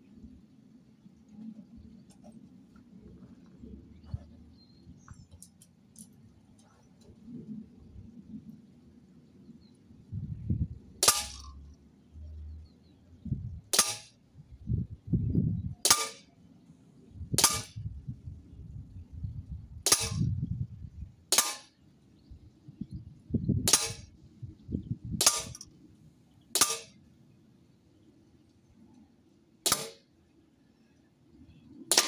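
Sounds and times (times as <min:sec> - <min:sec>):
airgun firing sharp cracks: 0:11.0 - 0:11.5, 0:13.7 - 0:14.2, 0:15.8 - 0:16.3, 0:17.4 - 0:17.8, 0:19.8 - 0:20.3, 0:21.3 - 0:21.8, 0:23.7 - 0:24.1, 0:25.2 - 0:25.6, 0:26.5 - 0:27.0, 0:29.6 - 0:30.1.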